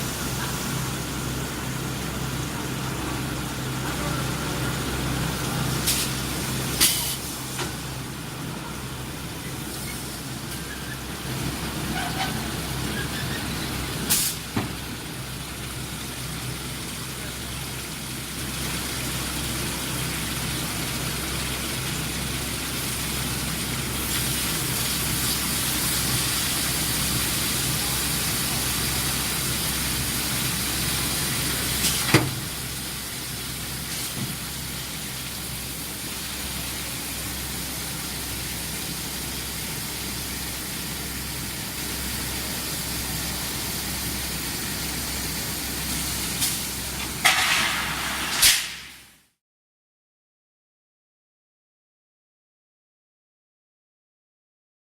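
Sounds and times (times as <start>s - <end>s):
hiss: 5.7s - 7.7s, 12.0s - 14.6s, 23.9s - 35.3s, 42.4s - 49.2s.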